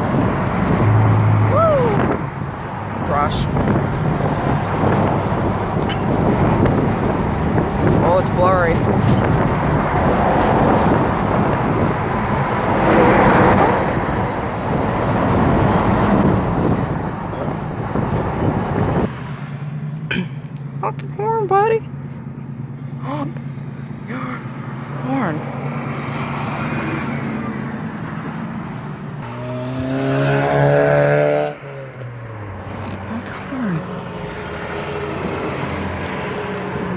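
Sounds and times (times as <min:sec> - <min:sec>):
road traffic passing: 0:00.0 - 0:36.9
vehicle driving past: 0:21.8 - 0:36.9.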